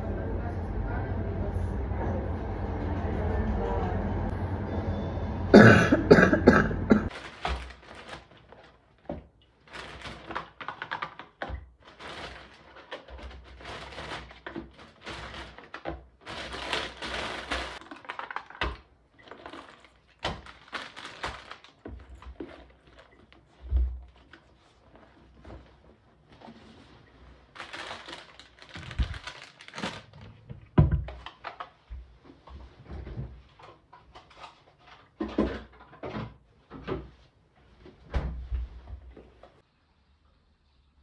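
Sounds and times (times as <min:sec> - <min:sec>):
steady low rumble: 0:00.0 - 0:07.0
person coughing: 0:05.5 - 0:07.1.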